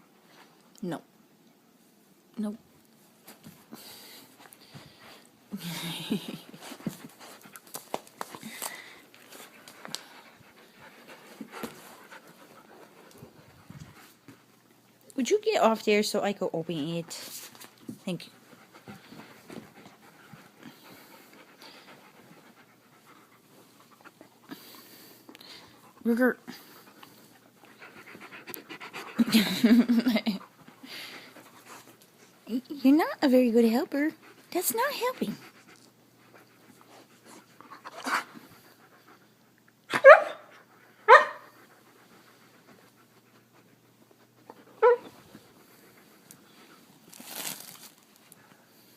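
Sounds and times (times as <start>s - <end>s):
dog panting: 3.6s - 14.8s, 16.6s - 39.8s, 40.4s - 47.0s
dog yipping: 39.9s - 40.5s, 41.1s - 41.5s, 44.8s - 45.1s.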